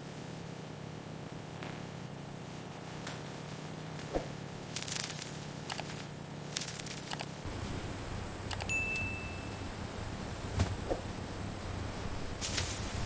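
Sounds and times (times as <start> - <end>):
low machine hum: 0.0 - 13.0
handling clicks and rustles: 3.0 - 7.5.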